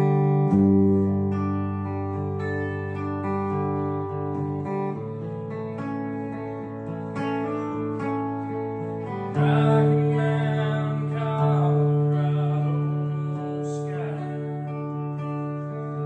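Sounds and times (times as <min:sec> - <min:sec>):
acoustic guitar strumming chords: 0:00.0 - 0:16.0
person singing: 0:08.6 - 0:16.0.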